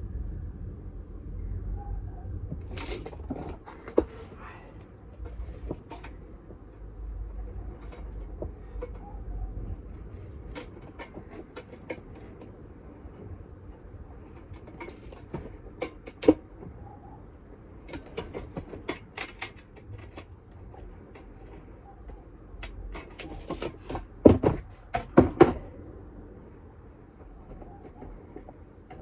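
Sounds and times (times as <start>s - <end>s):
low rumble: 0.0s - 3.6s
light clicks and knocks: 2.5s - 17.0s.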